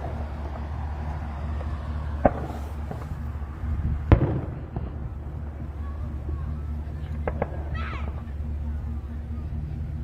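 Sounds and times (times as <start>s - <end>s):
firework bursts: 0.0s - 9.8s
steady low hum: 0.0s - 10.0s.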